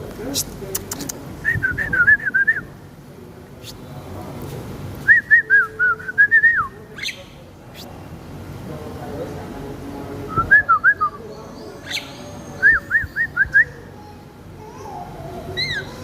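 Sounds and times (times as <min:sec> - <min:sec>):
low background murmur: 0:00.0 - 0:16.0
birds whistling: 0:05.1 - 0:07.9, 0:10.3 - 0:13.8, 0:15.5 - 0:16.0.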